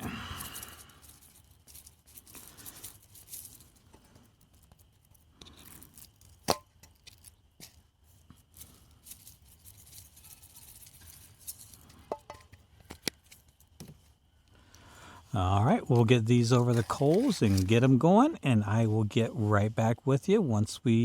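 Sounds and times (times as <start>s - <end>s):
packaging rustling and tearing: 0.0s - 3.9s, 8.5s - 11.9s, 16.0s - 17.9s.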